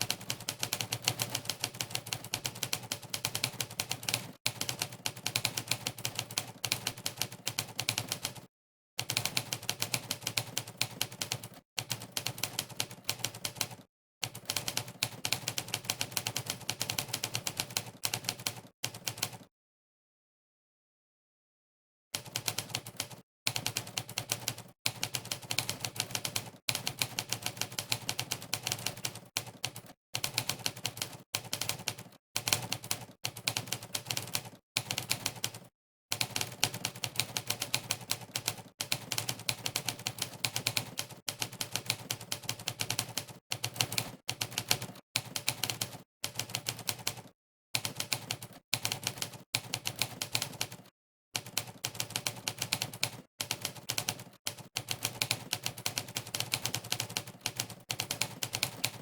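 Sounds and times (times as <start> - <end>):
rapid typewriter key clacks: 51.4 - 59.0.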